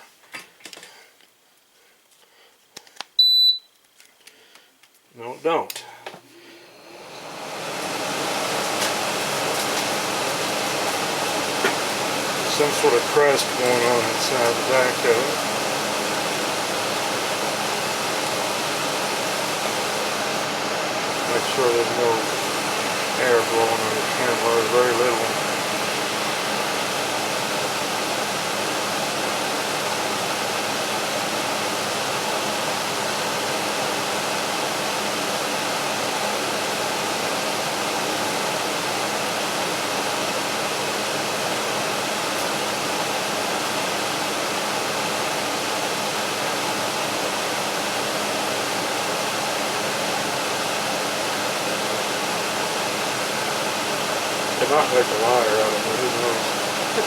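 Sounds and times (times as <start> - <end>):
air conditioner fan blowing air: 5.2 - 57.0.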